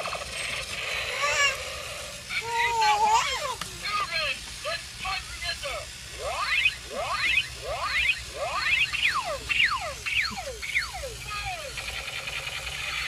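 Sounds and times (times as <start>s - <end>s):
toy robot laser sweeps: 5.6s - 13.0s.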